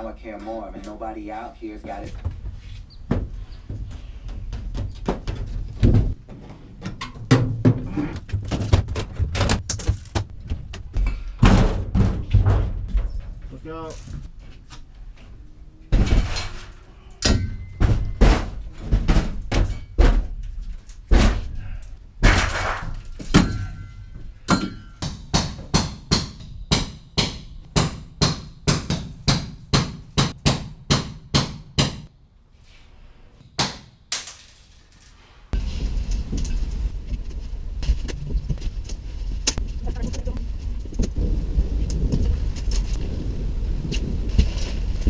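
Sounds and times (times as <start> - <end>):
hammer striking metal punch: 17.2 - 18.3, 23.3 - 32.1
steady low rumble: 35.6 - 45.0.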